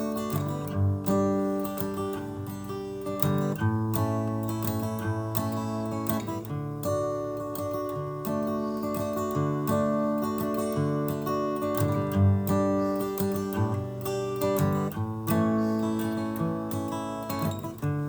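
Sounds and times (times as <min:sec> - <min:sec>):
acoustic guitar strumming chords: 0:00.0 - 0:18.0.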